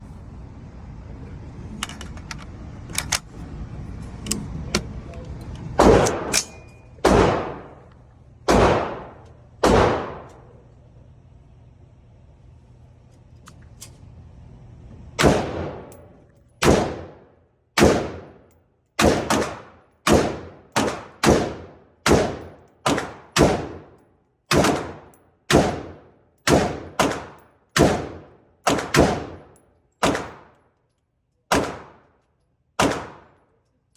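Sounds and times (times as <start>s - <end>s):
rifle shots: 5.8s - 6.4s, 7.0s - 7.8s, 8.5s - 10.3s, 15.2s - 16.0s, 16.6s - 18.4s, 19.0s - 30.6s, 31.5s - 32.1s, 32.8s - 33.4s.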